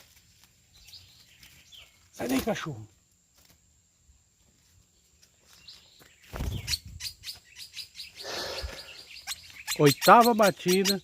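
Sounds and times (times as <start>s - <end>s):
bird singing sharp high notes: 7.5s - 11.0s.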